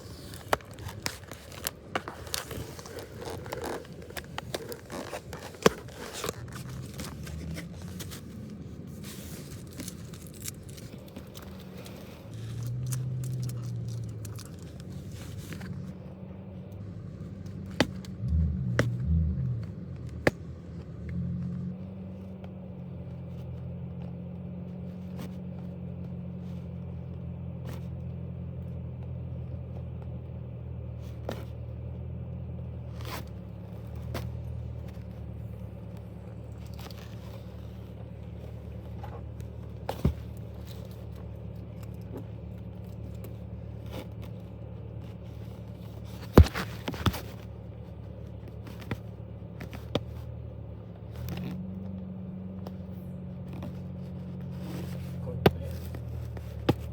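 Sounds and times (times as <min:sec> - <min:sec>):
package scraping and rustling: 0:00.0 - 0:16.1, 0:33.0 - 0:49.1
low engine and road rumble: 0:00.0 - 0:56.9.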